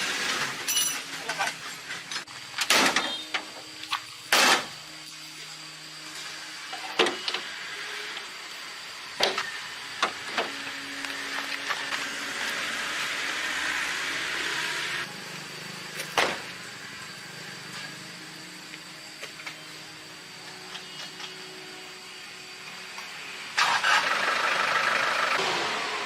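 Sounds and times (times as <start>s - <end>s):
steady mechanical hum: 0.0s - 26.0s
hiss: 5.4s - 26.0s.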